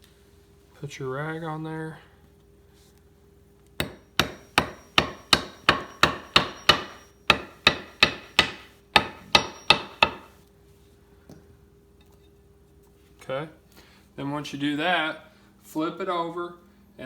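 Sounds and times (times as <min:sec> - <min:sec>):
hammer taps ringing: 0:03.8 - 0:10.3.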